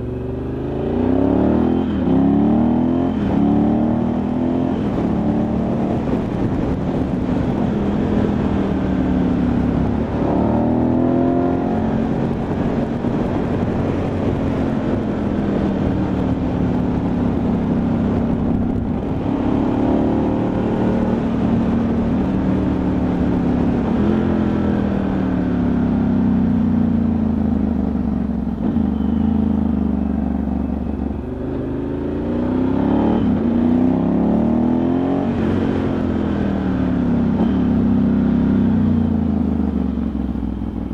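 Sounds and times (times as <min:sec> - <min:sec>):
motorcycle engine revving: 0:00.0 - 0:40.9
wind on microphone: 0:01.0 - 0:29.2.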